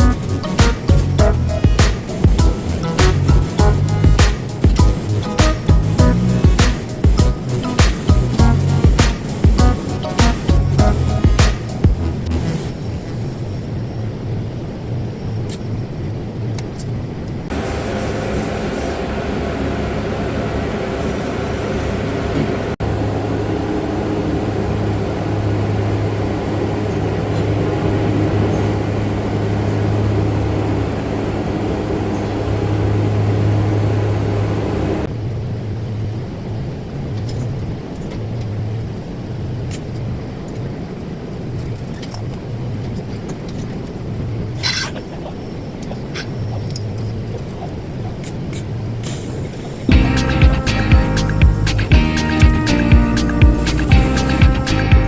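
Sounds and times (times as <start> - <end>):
welding arc buzzing hum: 0.0 - 12.6, 17.5 - 35.1
low background hum: 0.0 - 55.0.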